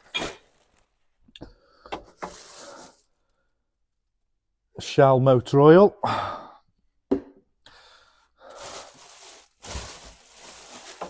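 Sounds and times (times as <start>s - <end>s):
heavy breaths out: 6.0s - 6.7s, 7.6s - 9.2s.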